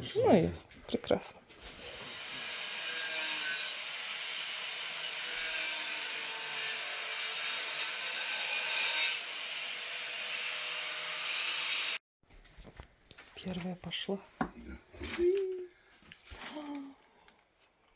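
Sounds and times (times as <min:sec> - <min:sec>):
stone tile being cut: 0:01.7 - 0:12.0.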